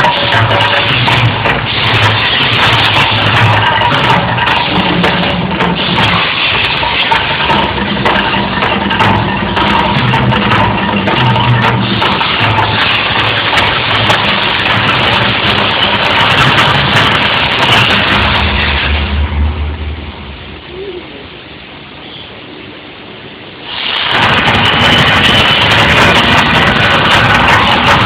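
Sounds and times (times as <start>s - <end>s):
roar of eruption effects: 16.6s - 20.8s.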